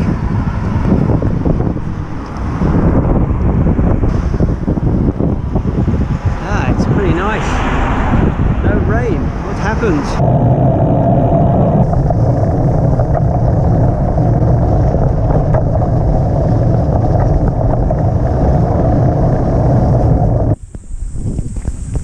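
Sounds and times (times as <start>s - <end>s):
bike riding rumble on road: 0.0s - 22.0s.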